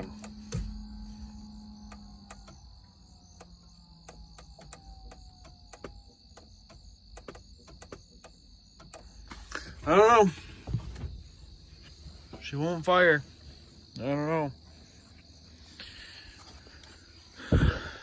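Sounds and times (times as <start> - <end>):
steady high-pitched tone: 0.0 - 5.0.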